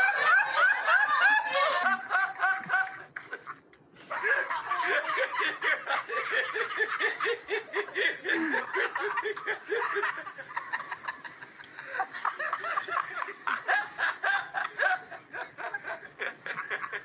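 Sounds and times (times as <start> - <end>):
rapid staccato laughter: 0.0 - 17.0.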